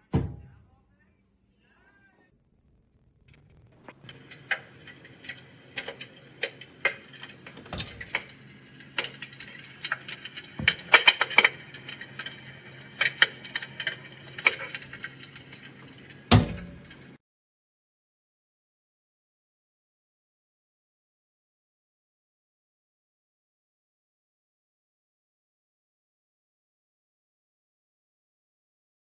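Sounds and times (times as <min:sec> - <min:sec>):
faint steady hum: 0:02.2 - 0:17.2
fire crackling and popping: 0:02.4 - 0:17.2.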